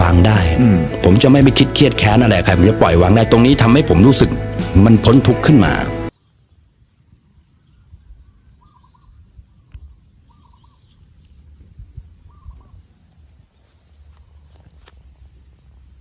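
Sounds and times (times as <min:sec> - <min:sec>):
bird calling: 0:07.6 - 0:11.2, 0:12.2 - 0:12.9.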